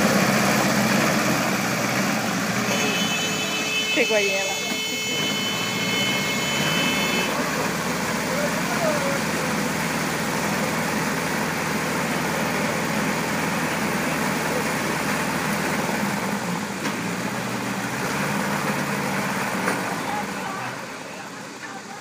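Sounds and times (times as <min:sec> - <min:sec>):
hay baler mechanical drone: 0:00.0 - 0:22.0.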